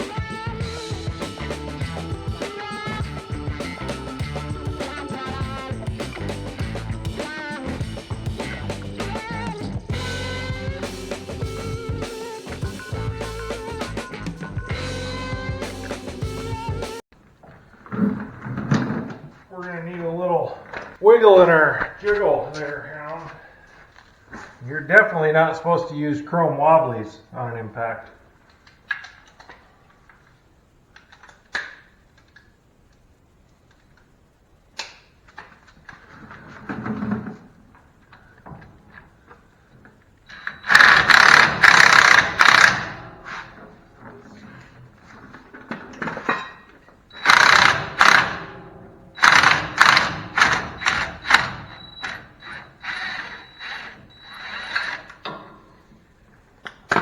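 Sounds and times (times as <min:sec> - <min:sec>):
impact wrench bursts: 0:40.3 - 0:55.8
hand tools clinking: 0:40.3 - 0:57.0.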